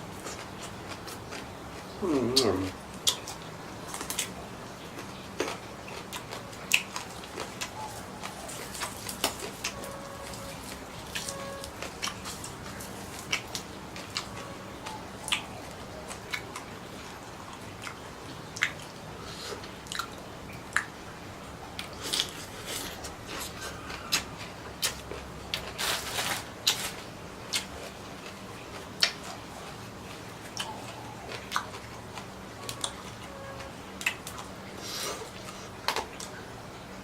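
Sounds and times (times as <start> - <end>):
person chewing food: 0.0 - 4.3, 4.9 - 20.9, 21.8 - 36.4.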